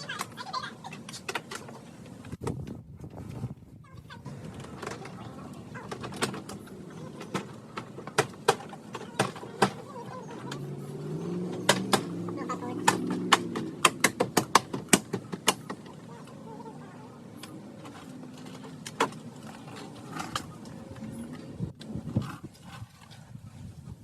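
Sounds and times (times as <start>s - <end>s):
faint voices: 3.8s - 13.5s, 15.8s - 18.8s
sharp clicks and knocks: 11.5s - 16.0s.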